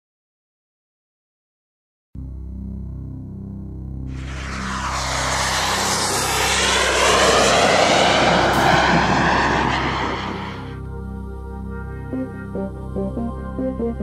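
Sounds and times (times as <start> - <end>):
music: 2.2 - 4.1, 10.8 - 14.0
aircraft flying past: 4.1 - 11.0.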